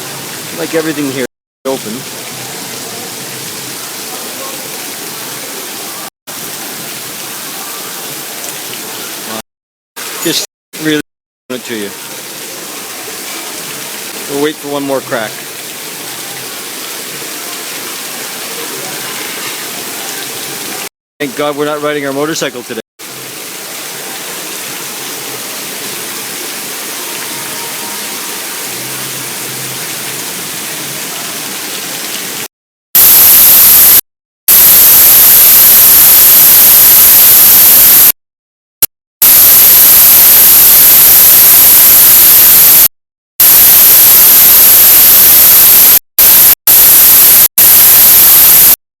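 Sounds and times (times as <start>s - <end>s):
harsh digital static: 33.0s - 38.2s, 39.2s - 48.8s.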